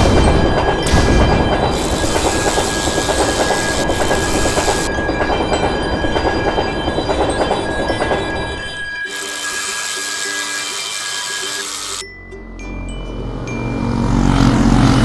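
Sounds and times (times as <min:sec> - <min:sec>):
steady high tone: 0:01.7 - 0:04.9, 0:09.1 - 0:12.0.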